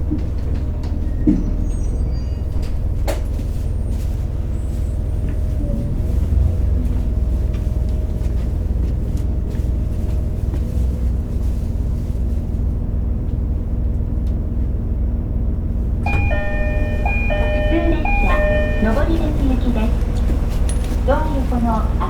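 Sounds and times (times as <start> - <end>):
diesel railcar engine rumble: 0.0 - 22.0
electronic chime: 16.1 - 19.0.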